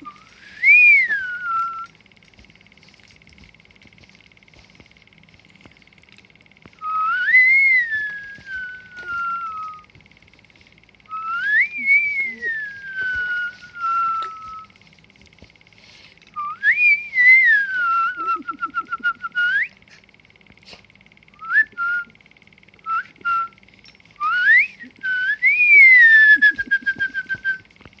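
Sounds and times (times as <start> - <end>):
person whistling: 0.0 - 1.9, 6.8 - 9.9, 11.1 - 14.8, 16.4 - 19.8, 21.4 - 22.2, 22.9 - 23.6, 24.2 - 27.7.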